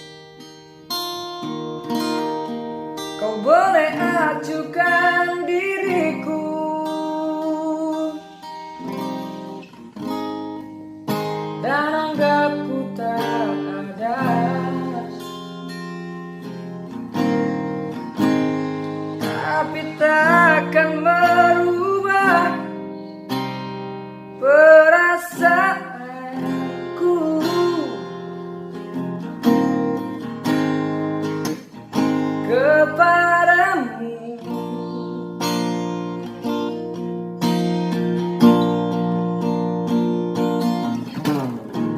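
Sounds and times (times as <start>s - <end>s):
acoustic guitar strummed and picked: 0.0s - 41.9s
person singing a ballad: 3.0s - 9.6s, 11.5s - 30.4s, 32.0s - 37.1s.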